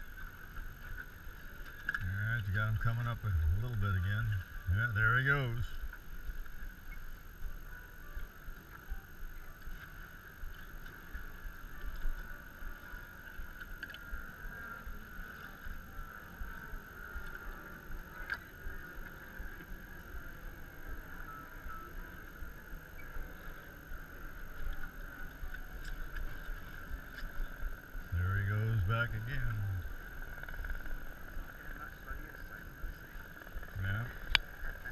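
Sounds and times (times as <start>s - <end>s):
low uneven rumble: 0.0s - 34.9s
faint clicks: 0.2s - 3.9s, 9.6s - 20.0s, 29.2s - 34.9s.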